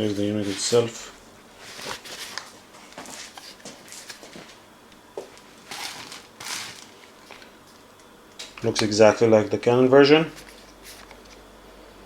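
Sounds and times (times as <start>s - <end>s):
packaging rustling and clicks: 1.7s - 4.6s, 5.4s - 7.5s.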